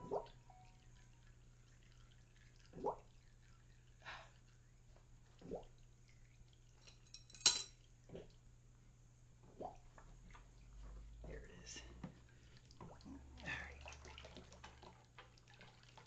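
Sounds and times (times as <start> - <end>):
fluid dripping: 0.0 - 8.6, 9.4 - 16.0.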